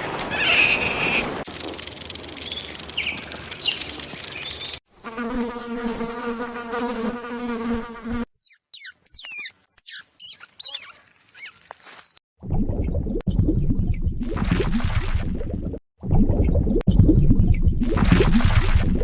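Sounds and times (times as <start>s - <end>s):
insect wing buzz: 1.5s - 12.2s
high downward-sweeping chirps: 8.3s - 10.9s.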